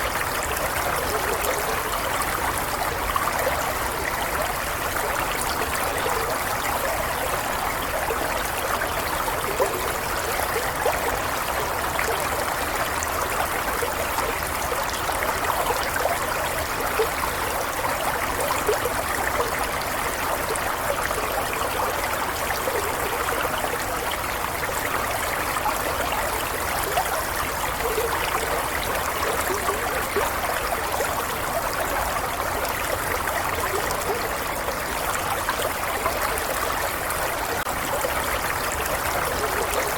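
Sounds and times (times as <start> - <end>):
stream of water flowing: 0.0 - 39.9.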